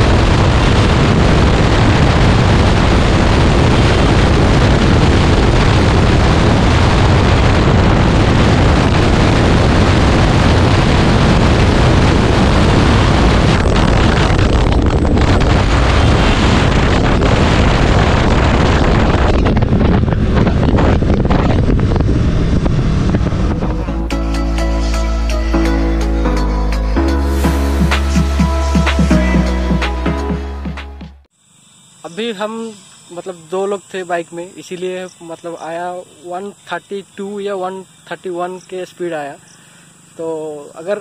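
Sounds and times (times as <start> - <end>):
wind rushing on microphone: 0.0 - 24.1
motorcycle engine running: 0.0 - 24.6.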